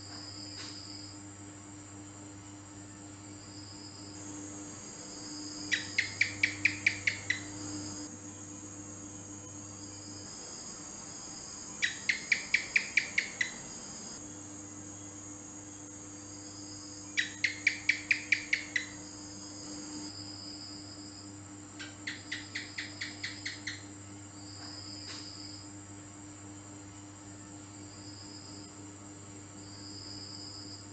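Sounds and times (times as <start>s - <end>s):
faint steady hum: 0.0s - 30.9s
gecko chirping: 5.2s - 8.1s, 11.8s - 14.2s, 17.2s - 19.0s, 21.8s - 23.8s.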